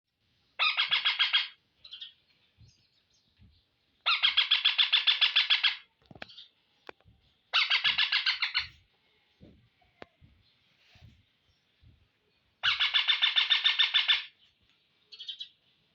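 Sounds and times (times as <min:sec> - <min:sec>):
parakeet screeching: 0:00.6 - 0:02.1, 0:04.1 - 0:05.8, 0:07.6 - 0:08.7, 0:12.6 - 0:14.3.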